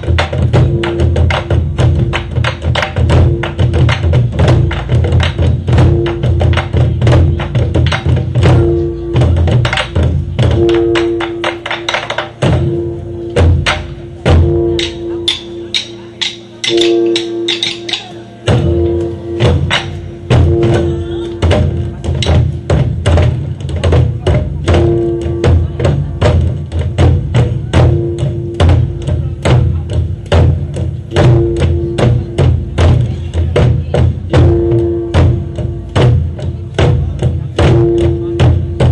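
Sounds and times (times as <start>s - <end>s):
ensemble of barrel drums: 0.0s - 38.9s
ringing tone: 14.4s - 19.7s.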